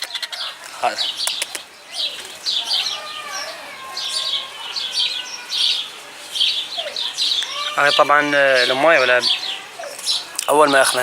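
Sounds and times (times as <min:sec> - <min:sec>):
birds chirping: 0:00.0 - 0:11.0.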